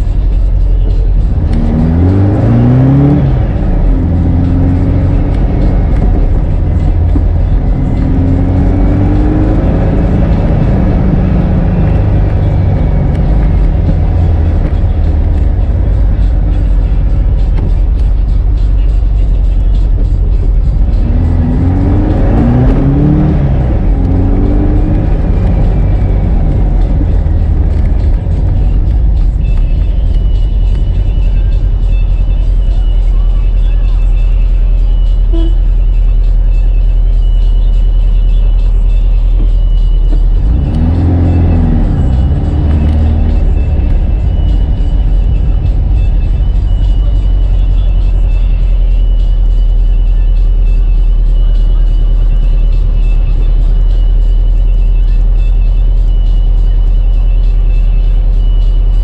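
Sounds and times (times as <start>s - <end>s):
car engine rumbling: 0.0s - 59.0s
road noise: 0.0s - 59.0s.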